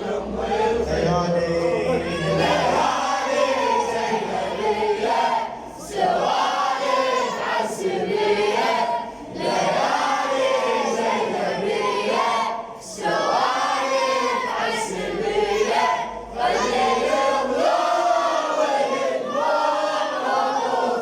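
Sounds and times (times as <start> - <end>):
chorus singing in unison: 0.0 - 21.0.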